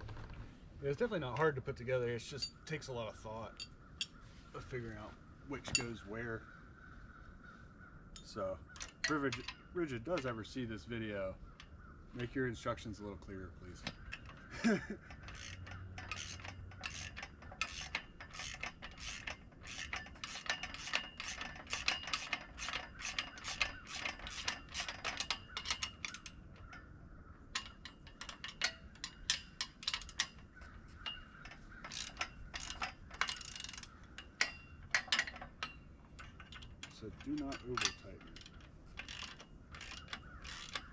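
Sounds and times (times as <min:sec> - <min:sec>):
ratchet wrench clicking: 0:15.1 - 0:26.8, 0:27.6 - 0:40.9.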